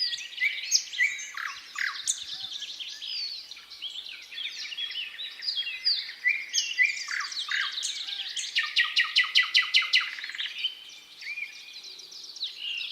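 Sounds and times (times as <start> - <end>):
nightingale singing: 0.0 - 12.9.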